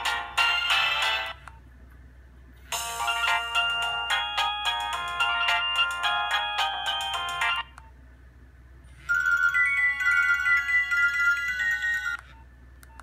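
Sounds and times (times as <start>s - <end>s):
electronic ringtone melody: 0.0s - 1.4s, 2.7s - 7.7s, 9.1s - 12.2s.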